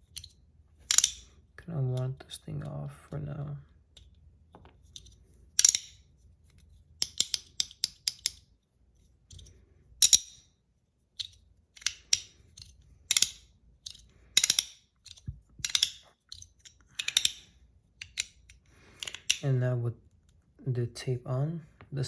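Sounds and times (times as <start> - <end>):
magnetic fidget slider clacking: 11.2 - 19.4.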